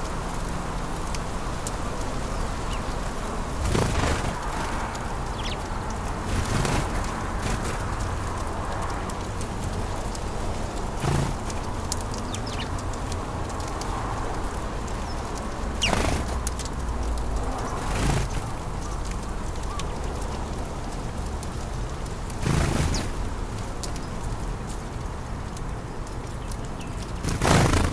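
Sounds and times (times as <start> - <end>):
sparrows chirping: 2.2 - 7.8, 11.0 - 12.9, 14.9 - 16.4, 22.4 - 23.2, 26.3 - 27.9.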